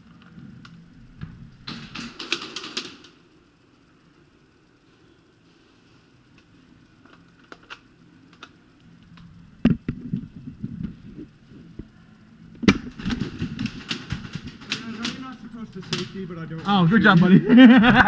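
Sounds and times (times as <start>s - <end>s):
airsoft gunfire pops: 12.6s - 13.2s.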